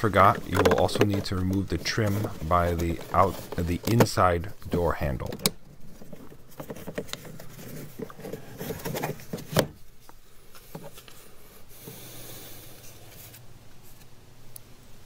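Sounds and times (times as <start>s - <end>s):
plastic trim clicking and rubbing: 0.0s - 9.8s.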